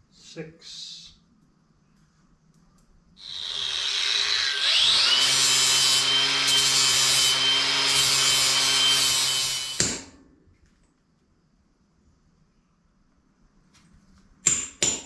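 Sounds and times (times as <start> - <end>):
power grinder grinding metal: 3.2 - 9.8.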